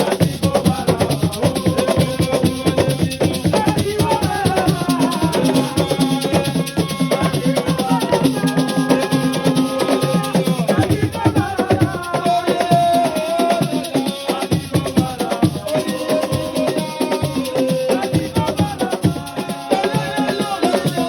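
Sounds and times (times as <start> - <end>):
fast hand percussion: 0.0 - 21.0
shaker rattles: 0.0 - 21.0.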